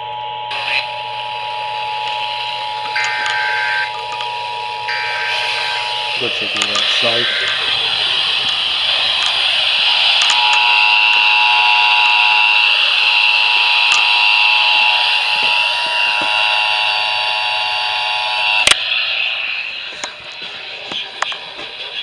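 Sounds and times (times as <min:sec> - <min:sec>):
click: 0:00.5 - 0:15.6, 0:19.9 - 0:21.7
two-tone alert alarm: 0:00.5 - 0:17.1
hiss: 0:00.5 - 0:22.0.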